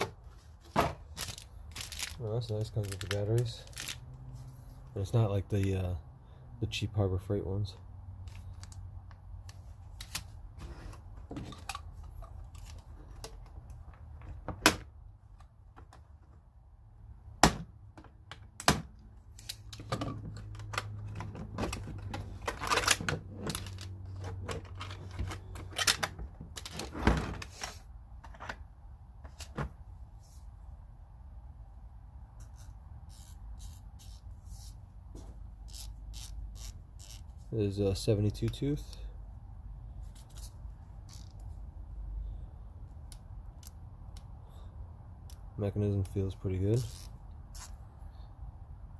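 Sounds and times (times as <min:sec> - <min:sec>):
plastic packaging rustling: 0:01.0 - 0:04.0.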